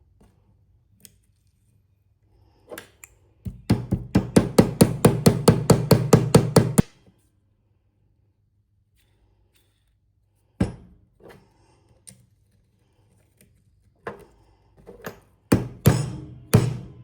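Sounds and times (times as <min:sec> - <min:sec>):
knocks and clunks of metal parts: 0:14.9 - 0:17.0.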